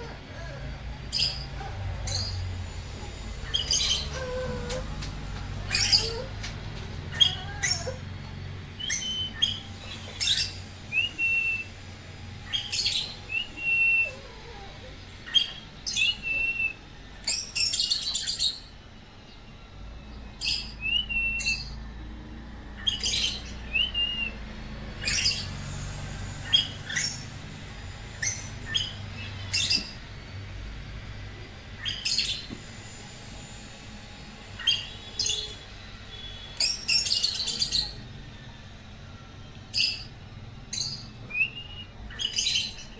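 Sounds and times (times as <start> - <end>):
birds chirping shrilly: 1.1 - 8.1, 8.8 - 18.8, 22.7 - 24.4, 25.0 - 30.6, 31.7 - 32.8, 33.8 - 38.0, 39.6 - 42.9
whistled bird notes: 8.8 - 18.8, 20.1 - 21.8, 22.7 - 24.4, 40.7 - 42.9.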